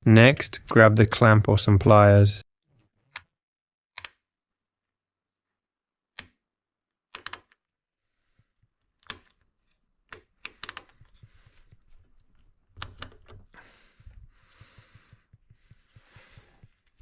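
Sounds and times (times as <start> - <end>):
soft handling noise: 10.5 - 17.0.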